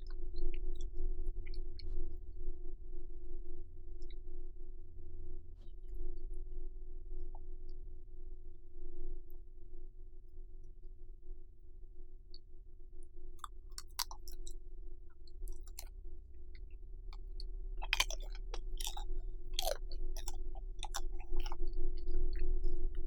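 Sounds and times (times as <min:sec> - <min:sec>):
low electrical hum: 0:00.0 - 0:23.0
wet chewing and crunching: 0:13.4 - 0:23.0.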